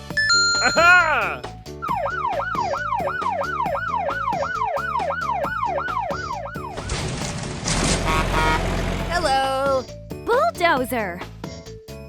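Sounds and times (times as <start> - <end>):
bouncy children's music: 0.0 - 6.7, 9.1 - 12.0
cartoon siren wail: 1.9 - 6.8
noisy rumbling crash: 6.8 - 9.0.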